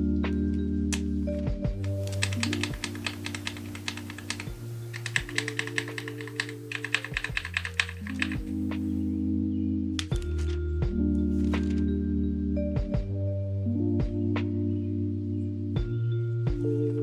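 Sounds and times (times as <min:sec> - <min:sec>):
soft background music: 0:00.0 - 0:17.0
rapid typing on mechanical keyboard: 0:01.8 - 0:08.9.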